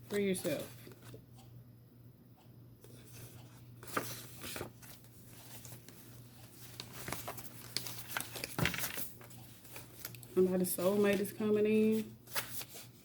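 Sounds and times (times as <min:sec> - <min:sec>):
low steady hum: 0:00.0 - 0:13.0
cards being shuffled: 0:11.9 - 0:13.0.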